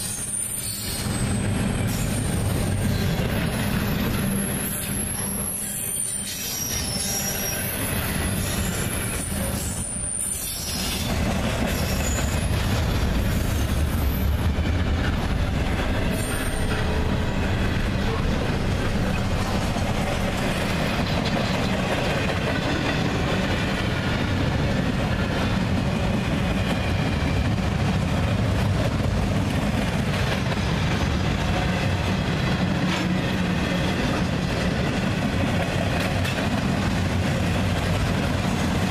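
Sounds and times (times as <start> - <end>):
high-pitched wheel squeal: 0.0 - 2.2, 4.3 - 11.1
freight train rumbling: 0.0 - 38.9
wheels clickety-clack: 0.8 - 38.9.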